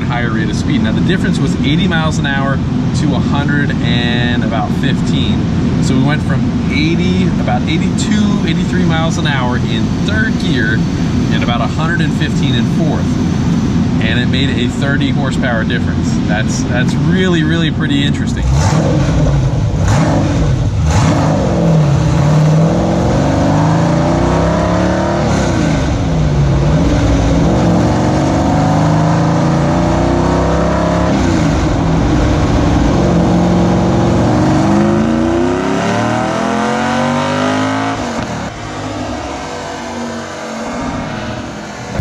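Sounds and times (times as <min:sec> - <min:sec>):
engine at full throttle: 0:00.0 - 0:42.0.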